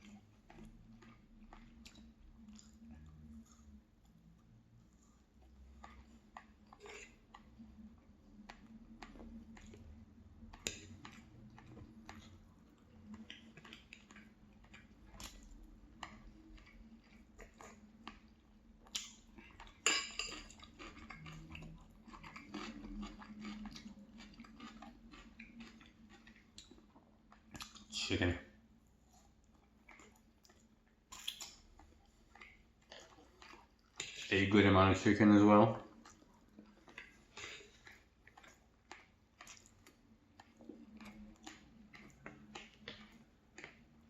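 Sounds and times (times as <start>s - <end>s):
person chewing food: 0.0s - 27.9s, 28.6s - 34.4s, 35.8s - 44.0s
cutlery clatter: 19.8s - 20.6s
cutlery clinking on a dish: 19.8s - 20.6s.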